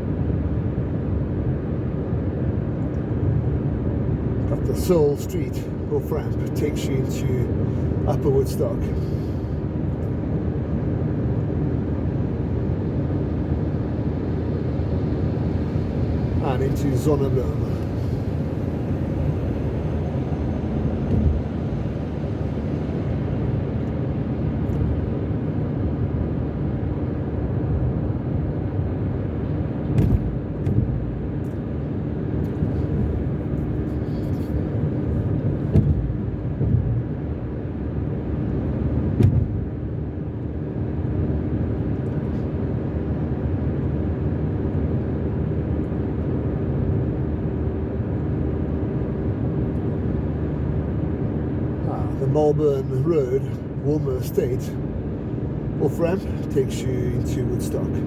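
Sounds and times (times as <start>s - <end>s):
faint steady hum: 0.0s - 36.3s, 47.9s - 58.0s
tyre and engine rumble: 0.0s - 58.0s.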